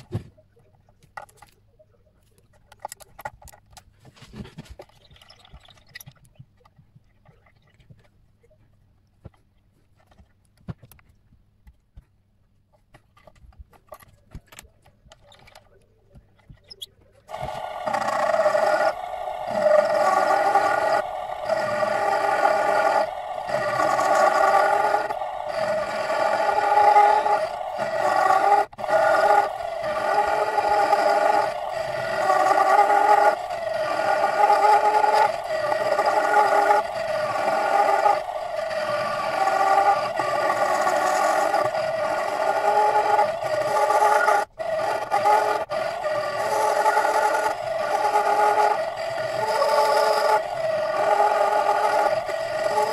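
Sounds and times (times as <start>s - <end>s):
faint clicks and taps: 0.0s - 17.3s
lathe motor whining: 17.3s - 52.9s.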